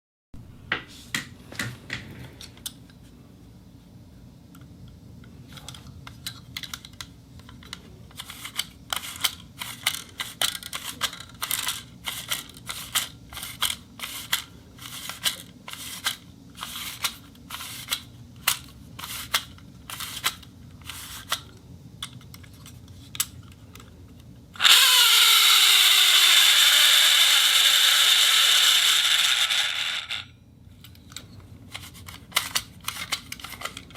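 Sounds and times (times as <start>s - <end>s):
reel spinning: 24.6s - 30.3s.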